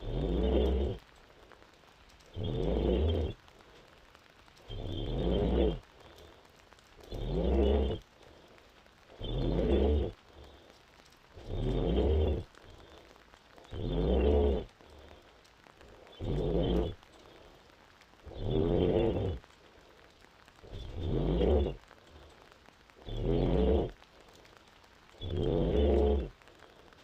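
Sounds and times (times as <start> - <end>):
quiet breathing: 0.0 - 27.0.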